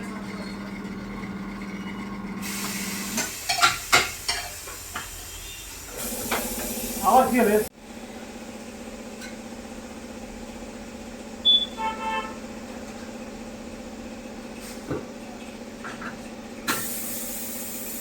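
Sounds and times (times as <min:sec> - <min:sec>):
vehicle horn toot: 0:05.2 - 0:05.9, 0:11.4 - 0:12.5.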